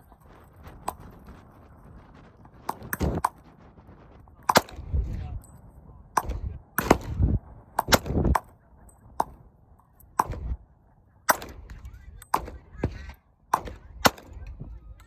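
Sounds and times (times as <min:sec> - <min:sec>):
gunshots: 0:04.5 - 0:05.0, 0:06.2 - 0:08.5, 0:10.2 - 0:10.6, 0:11.3 - 0:14.6.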